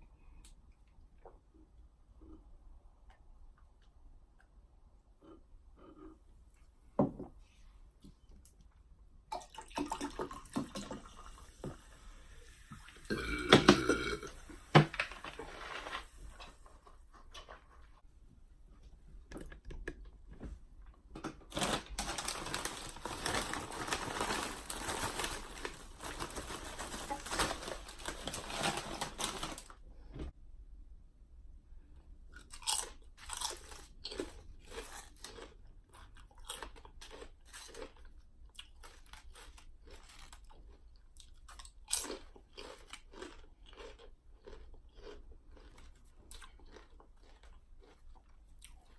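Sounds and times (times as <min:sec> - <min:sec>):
foil chip bag crinkling: 0:21.4 - 0:29.8.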